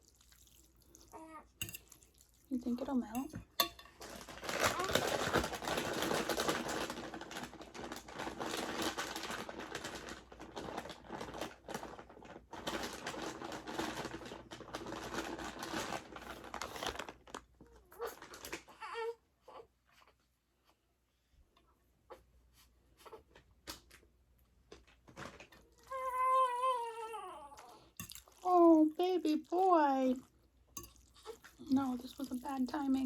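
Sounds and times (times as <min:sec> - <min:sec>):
sticky wet noodles crackling: 0:00.0 - 0:18.6, 0:27.5 - 0:33.0.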